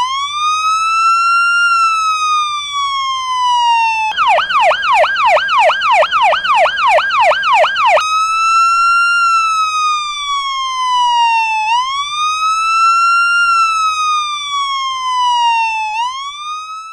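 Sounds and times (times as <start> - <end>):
electronic police siren: 0.0 - 16.9.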